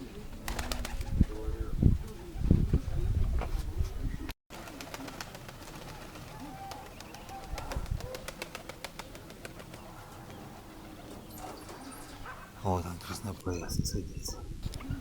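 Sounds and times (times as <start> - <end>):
wind rumble on microphone: 0.6 - 4.3, 7.5 - 8.2, 13.6 - 15.0
pigeons cooing: 4.1 - 12.6, 14.1 - 15.0.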